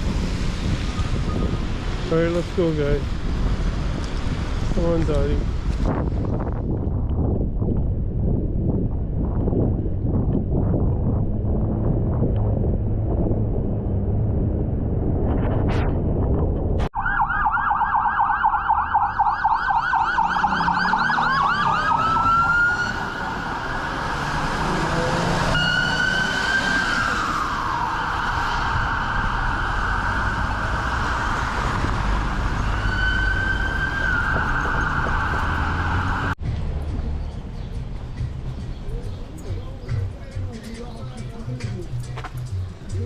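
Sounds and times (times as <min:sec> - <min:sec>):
street traffic noise: 0:00.0 - 0:43.0
emergency vehicle siren: 0:16.9 - 0:36.4.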